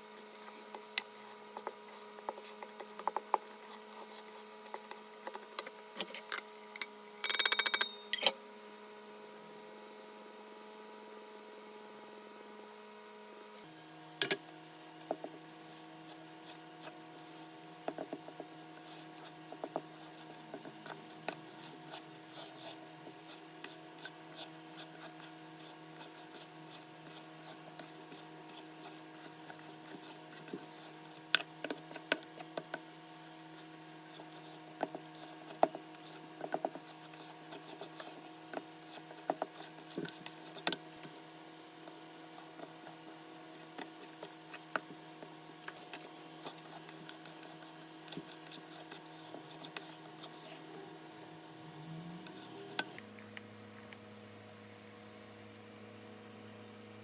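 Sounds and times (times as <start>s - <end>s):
utensils scraping a mixing bowl: 16.4s - 41.2s, 45.6s - 50.8s, 52.2s - 53.0s.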